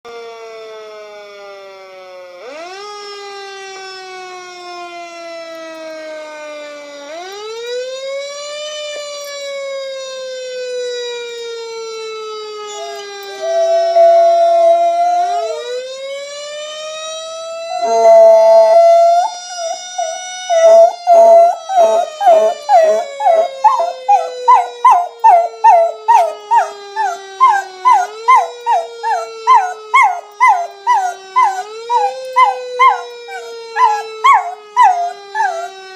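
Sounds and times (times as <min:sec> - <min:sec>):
fire engine siren wailing: 0:00.1 - 0:35.9
dog howling: 0:12.7 - 0:15.9, 0:17.7 - 0:35.9.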